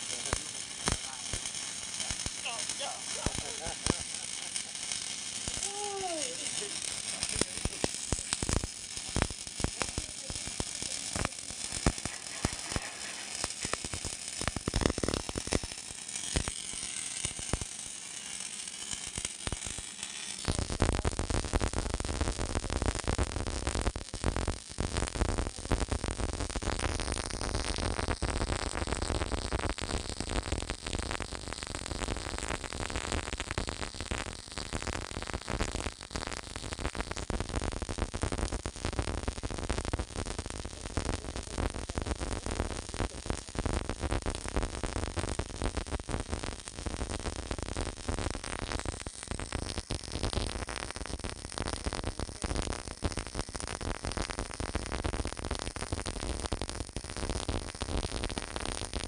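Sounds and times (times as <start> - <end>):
electric arc welding crackling: 0.0 - 59.0.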